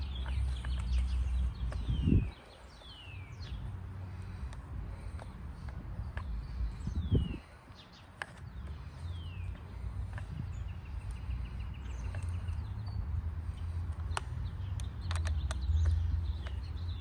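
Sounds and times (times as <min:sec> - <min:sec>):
steady low rumble: 0:00.0 - 0:14.9
birds chirping and trilling: 0:00.0 - 0:17.0
sharp light clicks: 0:13.9 - 0:16.8.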